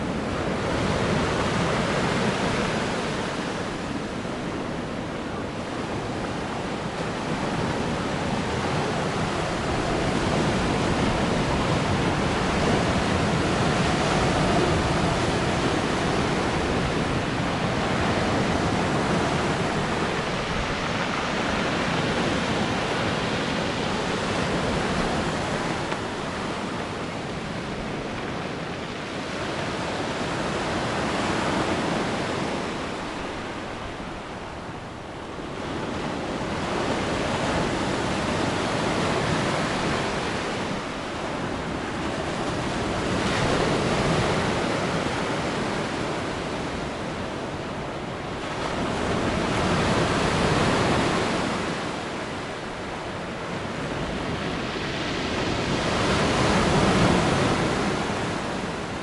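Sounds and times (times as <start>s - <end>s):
waves washing on shore: 0.0s - 59.0s.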